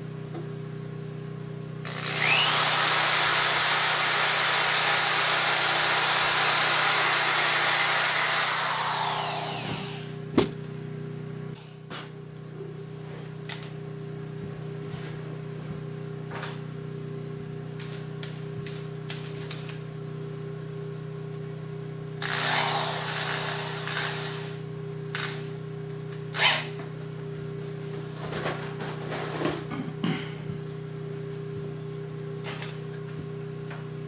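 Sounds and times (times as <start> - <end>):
electric drill motor humming: 1.8 - 10.2, 22.2 - 25.4, 26.3 - 26.8
drill bit cutting into wood: 1.9 - 10.2, 22.2 - 24.6, 26.4 - 26.7.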